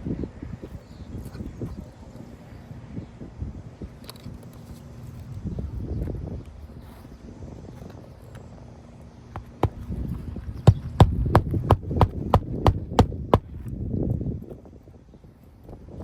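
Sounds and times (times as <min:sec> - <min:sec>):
low steady hum: 0:00.0 - 0:15.3
hammer striking nails: 0:09.4 - 0:10.0, 0:10.6 - 0:13.5.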